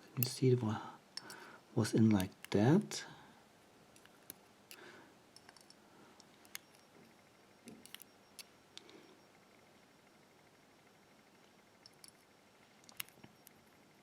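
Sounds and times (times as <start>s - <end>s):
light clicks of lock pins: 0.0s - 0.4s, 1.2s - 1.4s, 2.0s - 2.7s, 4.0s - 6.9s, 7.7s - 9.0s.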